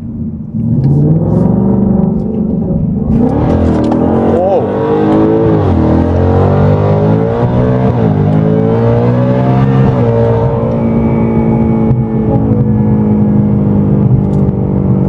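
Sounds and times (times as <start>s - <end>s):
car engine accelerating hard: 0.0s - 15.0s.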